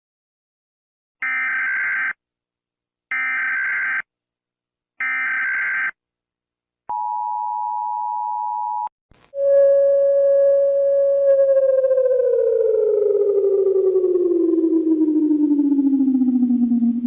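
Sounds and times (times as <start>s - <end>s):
lower steady tone: 9.4s - 17.0s.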